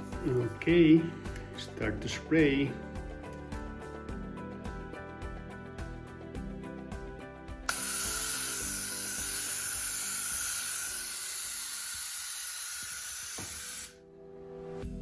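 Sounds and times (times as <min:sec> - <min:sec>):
aerosol spray can hissing: 0:07.7 - 0:14.0.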